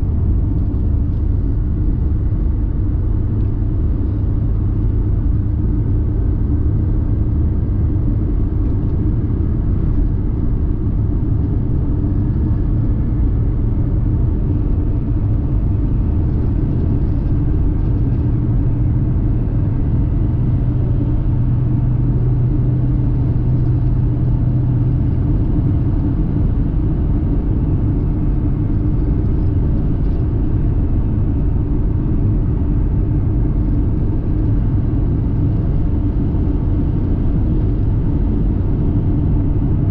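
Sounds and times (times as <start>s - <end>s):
car engine and road rumble: 0.0s - 39.9s.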